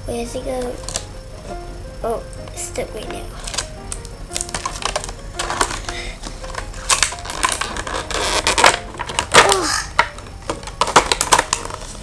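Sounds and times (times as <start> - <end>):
plastic toy parts clicking: 3.4 - 12.0.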